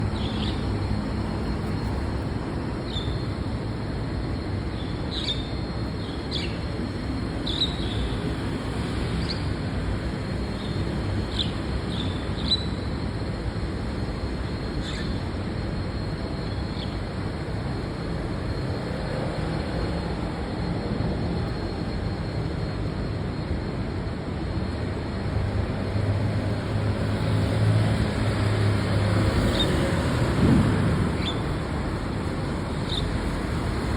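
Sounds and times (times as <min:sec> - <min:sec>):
road traffic rumble: 0:00.0 - 0:33.9
bird chirping: 0:31.2 - 0:31.6.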